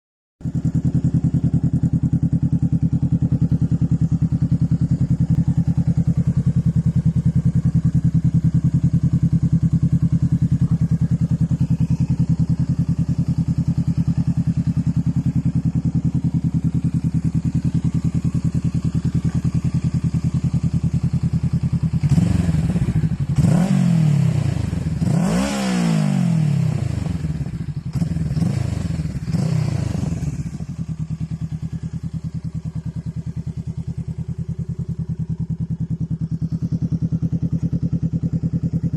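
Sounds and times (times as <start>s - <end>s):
motorcycle engine idling: 0.4s - 38.9s
engine revving: 21.9s - 30.7s.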